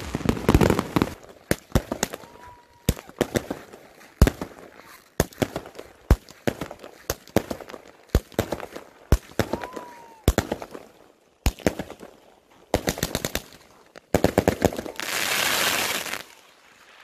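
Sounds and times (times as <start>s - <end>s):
fireworks cracking bangs: 0.0s - 12.1s, 12.7s - 17.0s
firework hissing rush: 15.0s - 17.0s.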